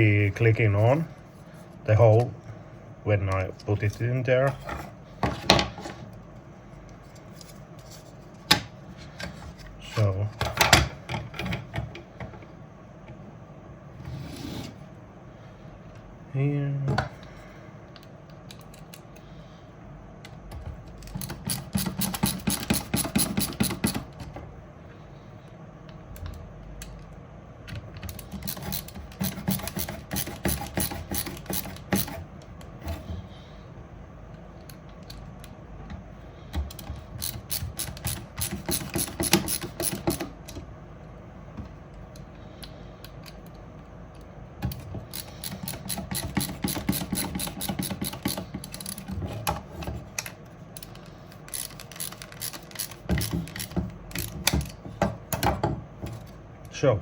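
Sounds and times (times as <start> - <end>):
fast ratchet-like clicking: 21.2 - 24.0, 28.1 - 32.2, 37.2 - 40.3, 45.1 - 49.0, 51.5 - 54.6.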